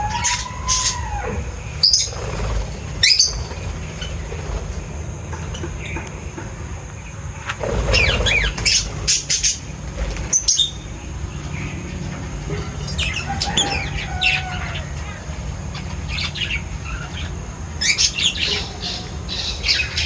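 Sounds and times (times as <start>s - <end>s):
birds chirping and squawking: 0.0s - 20.0s
steady low rumble: 0.0s - 20.0s
quick gliding bird calls: 7.5s - 11.0s.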